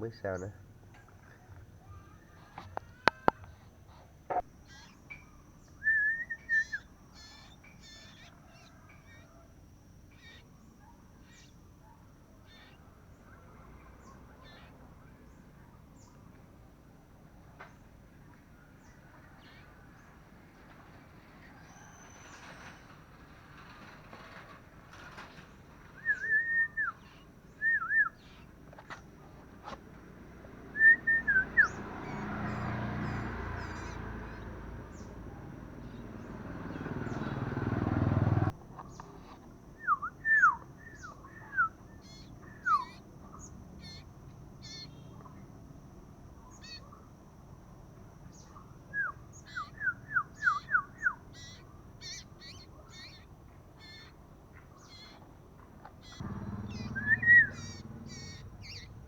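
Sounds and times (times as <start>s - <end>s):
faint high chirps: 0.0s - 29.8s, 30.4s - 37.3s, 38.8s - 59.0s
bird calling sharp notes: 1.9s - 9.5s, 25.9s - 29.0s, 30.6s - 35.1s, 39.2s - 45.4s, 48.4s - 54.2s, 56.0s - 59.0s.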